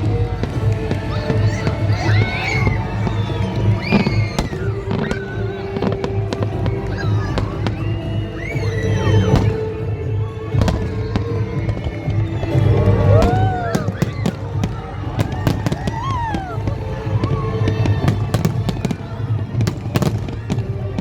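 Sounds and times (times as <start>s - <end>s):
fireworks bangs and crackles: 0.0s - 21.0s
loud background music: 0.0s - 21.0s.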